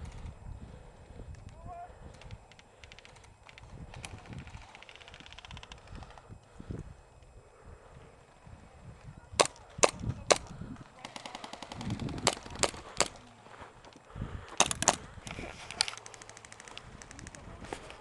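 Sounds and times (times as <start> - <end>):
airsoft gun full-auto bursts: 11.0 - 13.2.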